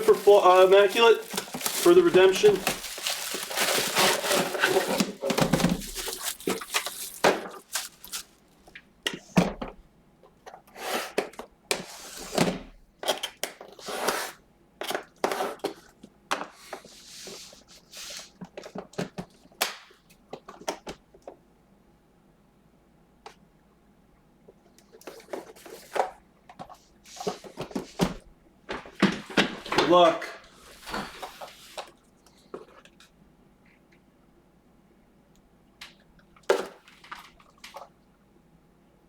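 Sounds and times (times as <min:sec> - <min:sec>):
packaging rustles and scrapes: 0:00.0 - 0:08.6.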